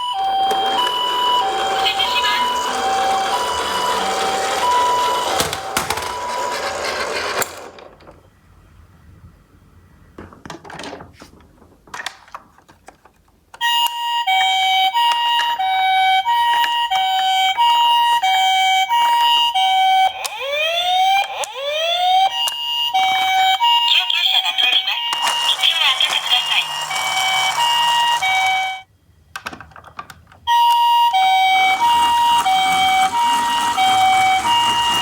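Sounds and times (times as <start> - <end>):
rising wailing siren: 0.0 - 6.7, 14.5 - 24.0, 30.6 - 35.0
toy two-tone siren: 0.0 - 7.8, 13.6 - 28.9, 30.5 - 35.0.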